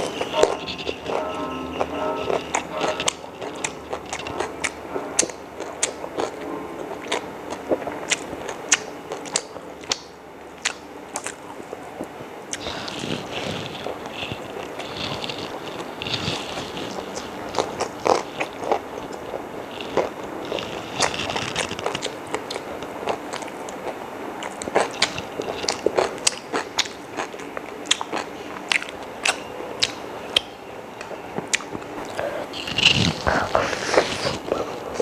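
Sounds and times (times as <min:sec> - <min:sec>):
mouth clicks and crunches: 0:00.0 - 0:35.0
person chewing food: 0:00.0 - 0:35.0.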